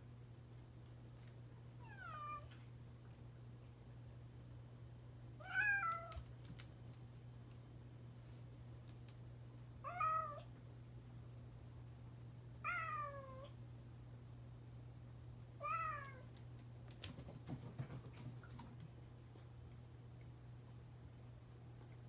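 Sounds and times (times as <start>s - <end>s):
cat meowing: 1.8s - 2.5s, 5.4s - 6.2s, 9.8s - 10.5s, 12.6s - 13.5s, 15.6s - 16.2s.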